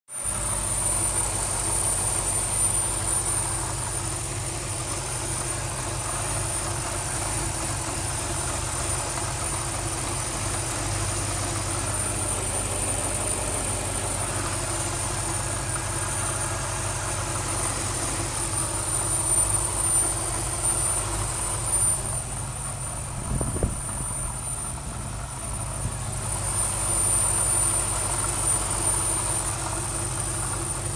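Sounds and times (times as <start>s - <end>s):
car engine idling: 0.1s - 30.9s
high-pitched engine whistle: 8.2s - 22.4s.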